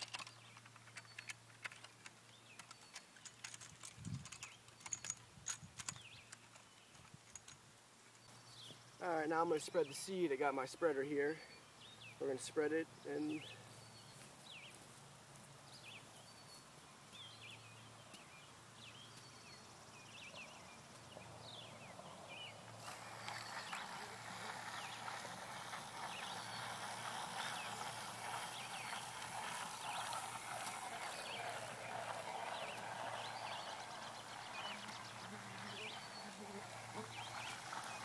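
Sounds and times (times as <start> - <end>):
birds chirping: 0.0 - 14.9, 15.6 - 38.0
hand seed spreader whirring: 20.9 - 38.0.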